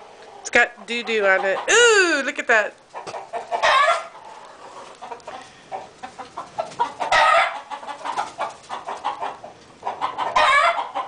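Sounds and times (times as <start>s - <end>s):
chickens clucking: 0.0s - 2.0s, 2.7s - 11.0s
loud chicken calls: 3.0s - 11.0s.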